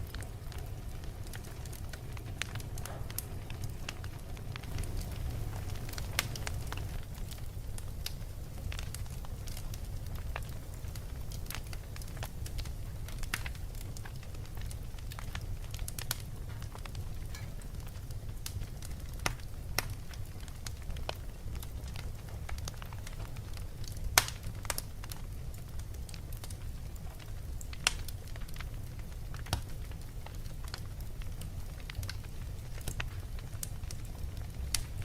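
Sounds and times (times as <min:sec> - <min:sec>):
wood fire crackling: 0:00.0 - 0:35.0
low rumble: 0:00.1 - 0:07.2.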